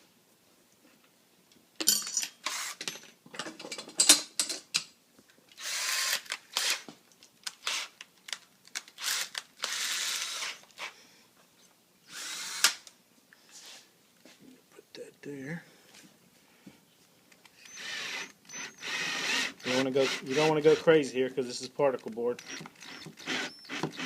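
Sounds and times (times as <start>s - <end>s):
power drill driving screws: 2.5s - 2.8s, 5.6s - 6.9s, 7.6s - 8.0s, 9.0s - 10.9s, 12.1s - 12.9s, 17.6s - 20.9s, 22.4s - 24.0s.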